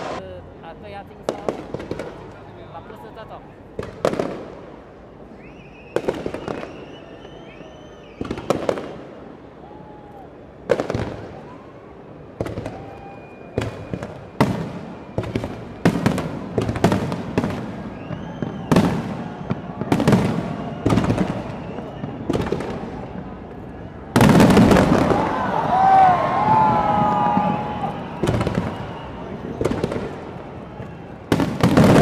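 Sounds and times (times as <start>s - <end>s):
fireworks crackle: 5.7s - 9.2s, 12.4s - 32.0s
fireworks shells booming: 13.6s - 32.0s.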